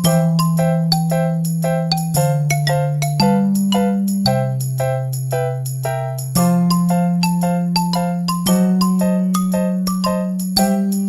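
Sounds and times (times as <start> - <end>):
bell-like chiming melody: 0.0 - 5.6, 6.2 - 11.0.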